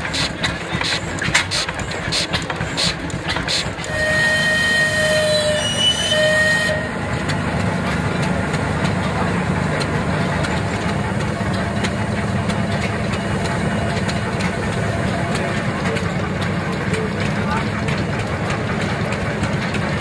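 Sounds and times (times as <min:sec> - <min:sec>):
steam engine running: 0:00.0 - 0:20.0
steam whistle blowing: 0:03.8 - 0:07.2.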